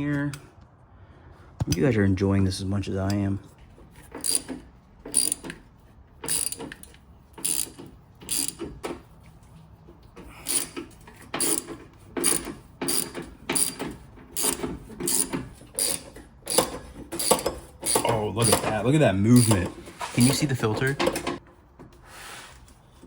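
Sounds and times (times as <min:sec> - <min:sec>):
ratchet wrench clicking: 0:04.1 - 0:05.6, 0:06.2 - 0:08.8, 0:10.4 - 0:18.8.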